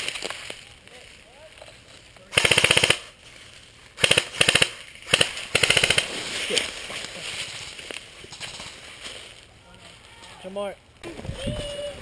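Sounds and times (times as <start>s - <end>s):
airsoft rifle bursts: 2.3s - 3.1s, 4.0s - 6.1s.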